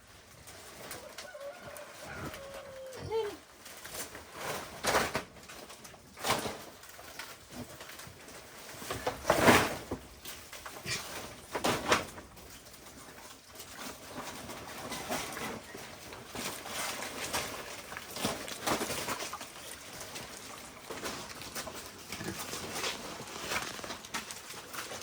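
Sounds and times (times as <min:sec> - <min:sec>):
short animal calls: 0:02.0 - 0:03.4.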